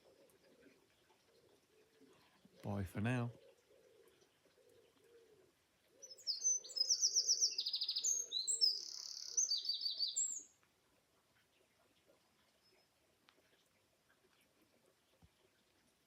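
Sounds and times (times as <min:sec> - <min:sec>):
pigeons cooing: 0:00.0 - 0:02.7, 0:03.3 - 0:09.5
songbird singing trills: 0:06.0 - 0:10.6.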